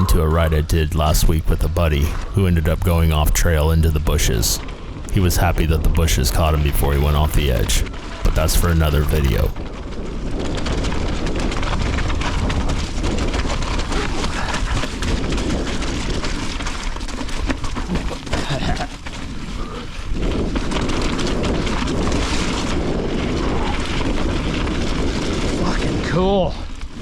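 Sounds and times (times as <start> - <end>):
wind rumble on microphone: 10.0 - 16.6.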